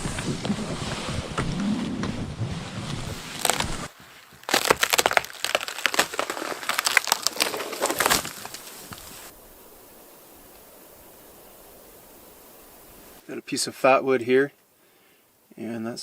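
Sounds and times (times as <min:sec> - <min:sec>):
wind gust: 0:00.0 - 0:03.9
snow crunching: 0:00.0 - 0:13.2.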